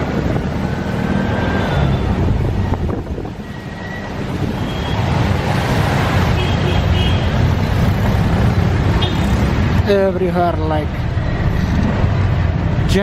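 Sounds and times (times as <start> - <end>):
wind buffeting microphone: 0.0 - 4.7
traffic engines rumbling: 0.0 - 13.0.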